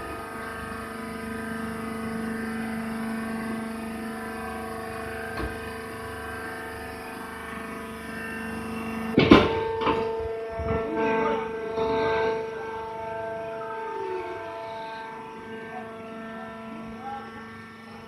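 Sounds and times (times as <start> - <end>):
baler motor and pump hum: 0.0 - 18.0
loud metallic clank: 9.2 - 10.9.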